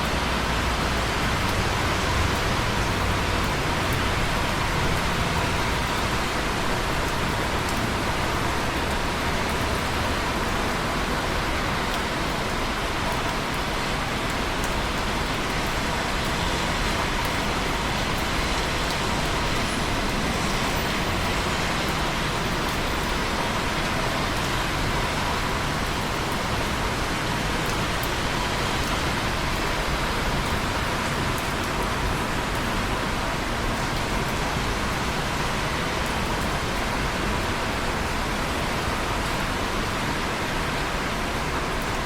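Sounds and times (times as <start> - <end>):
steady rain: 0.0 - 42.0.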